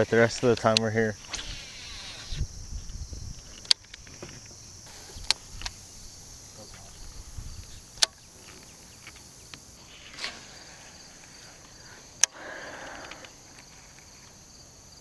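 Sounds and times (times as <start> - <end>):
high-pitched insect chorus: 0.0 - 15.0
rustle: 0.0 - 15.0
sharp clicks: 0.2 - 4.6, 5.2 - 5.8, 7.6 - 9.6, 11.6 - 13.7.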